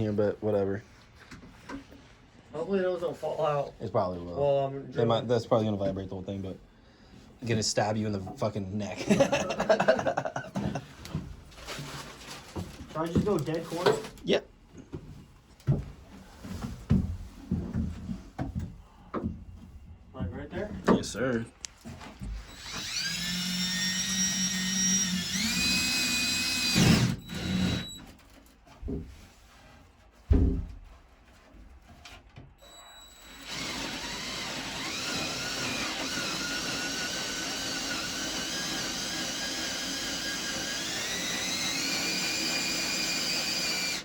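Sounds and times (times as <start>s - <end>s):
power drill with hole saw whining: 22.4s - 28.2s, 32.6s - 44.0s.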